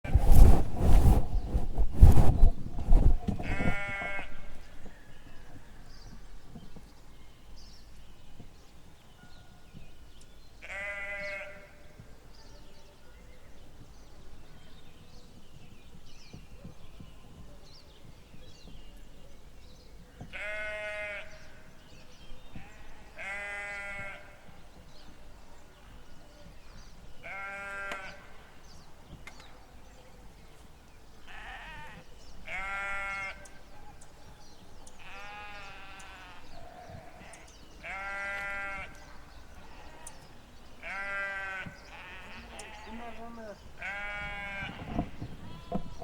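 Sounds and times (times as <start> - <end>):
sheep bleating: 10.6 - 11.7, 20.4 - 21.4, 23.2 - 24.3, 27.2 - 28.2, 31.3 - 33.5, 35.0 - 39.0, 40.8 - 44.8.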